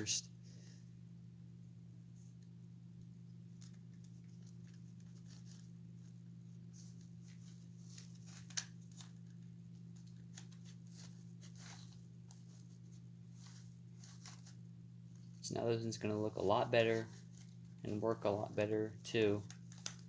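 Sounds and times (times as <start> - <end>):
steady low hum: 0.0 - 20.0
cloth rustling and scraping: 3.4 - 15.5.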